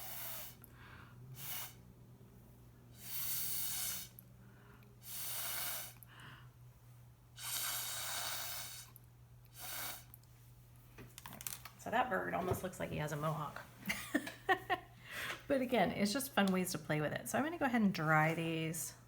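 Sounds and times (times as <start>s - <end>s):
breath blown through a straw: 0.0s - 0.7s, 1.3s - 1.8s, 2.9s - 4.2s, 5.0s - 6.1s, 7.4s - 10.2s.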